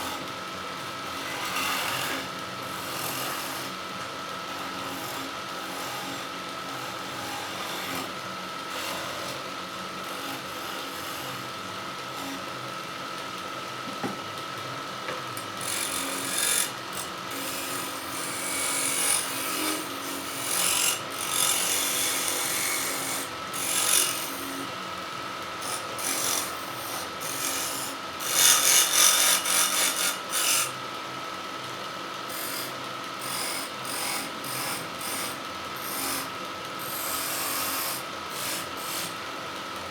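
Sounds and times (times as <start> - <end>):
wood lathe whining: 15.4 - 24.7, 25.6 - 30.8, 36.8 - 39.2.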